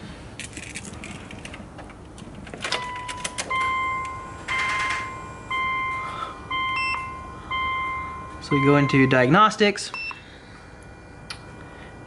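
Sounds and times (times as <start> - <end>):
car warning chime dinging: 2.8 - 10.3.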